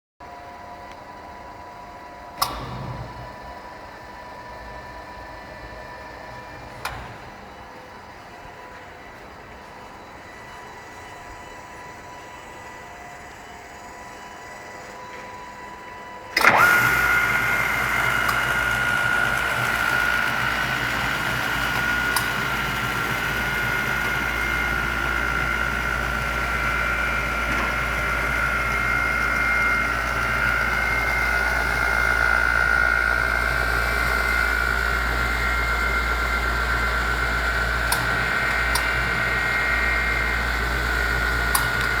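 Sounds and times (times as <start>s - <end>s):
electric motor whining: 16.1s - 42.0s.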